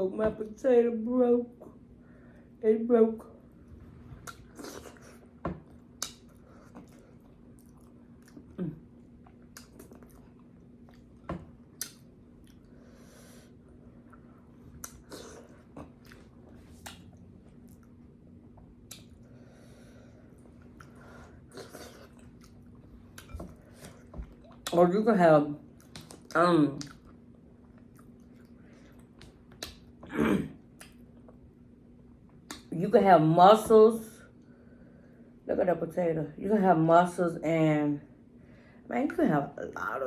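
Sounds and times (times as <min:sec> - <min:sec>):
chewing with lip smacks: 0:04.2 - 0:12.8, 0:14.0 - 0:19.3, 0:20.3 - 0:24.8, 0:25.7 - 0:30.0
soft breaths or slurps: 0:19.1 - 0:24.6.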